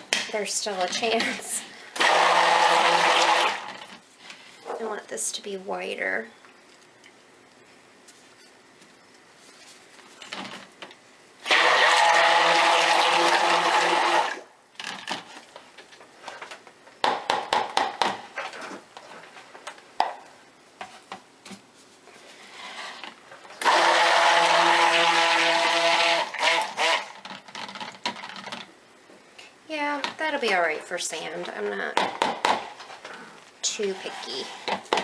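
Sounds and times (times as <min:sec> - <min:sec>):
stick blender motor whir: 0:02.0 - 0:03.8, 0:11.4 - 0:14.4, 0:23.6 - 0:27.3.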